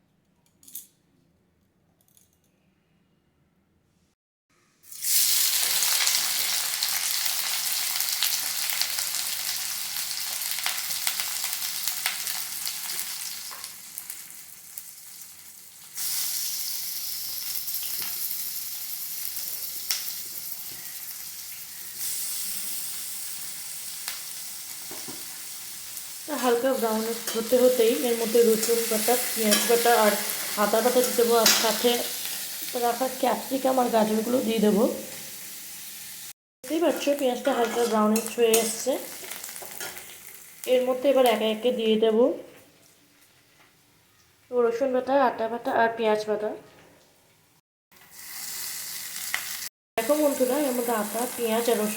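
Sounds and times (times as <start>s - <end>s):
onion sizzling in hot oil: 4.8s - 41.9s, 48.0s - 51.9s.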